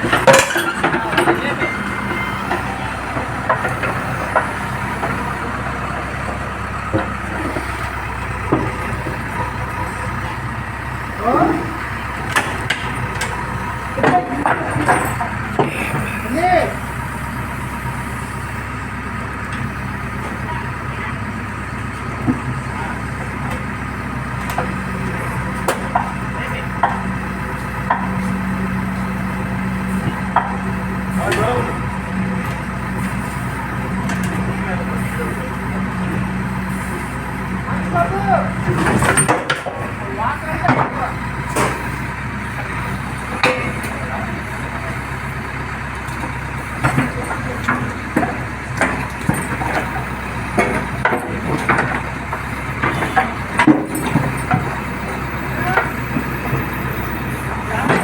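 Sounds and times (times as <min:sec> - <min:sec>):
diesel engine running: 0:00.0 - 0:58.0
knocks and clunks on concrete: 0:46.0 - 0:57.1.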